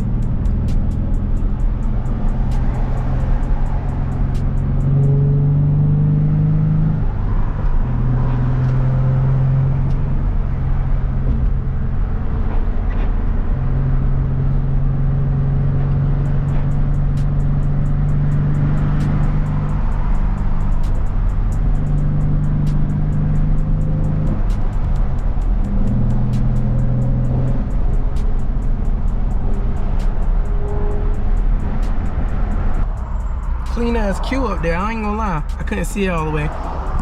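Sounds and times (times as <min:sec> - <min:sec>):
music from car stereo: 0:00.0 - 0:05.3, 0:16.4 - 0:37.0
car engine: 0:00.0 - 0:37.0
road noise: 0:00.0 - 0:37.0.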